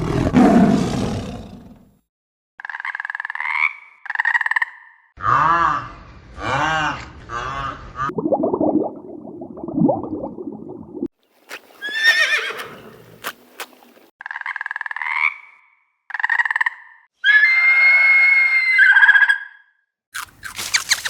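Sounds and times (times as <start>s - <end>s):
horses neighing: 11.8s - 13.2s.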